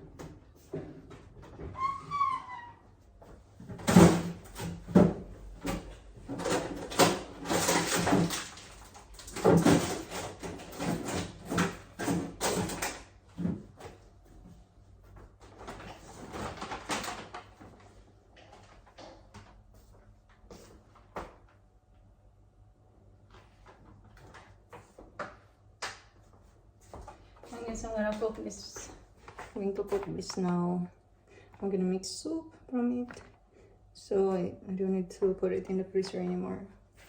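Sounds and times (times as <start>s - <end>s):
packages and freezer drawers knocking: 3.6s - 14.0s, 15.2s - 17.7s.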